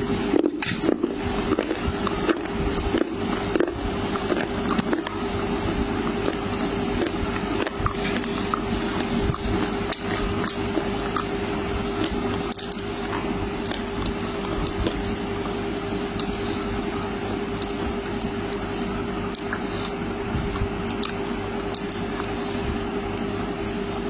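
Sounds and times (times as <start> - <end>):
steady low hum: 0.0 - 24.0
wet chewing: 0.2 - 23.3
mouth clicks and smacks: 19.2 - 22.4.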